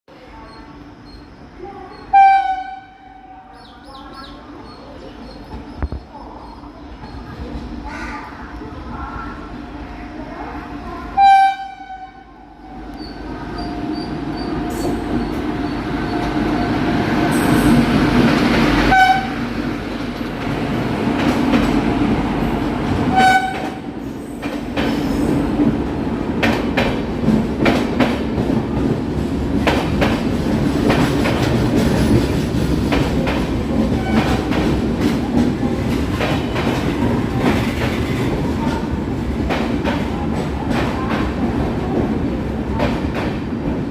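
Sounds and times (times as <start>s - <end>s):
train rumble: 0.1s - 43.9s
train horn blasts: 2.1s - 3.5s, 11.2s - 12.4s, 18.9s - 19.4s, 23.1s - 23.8s.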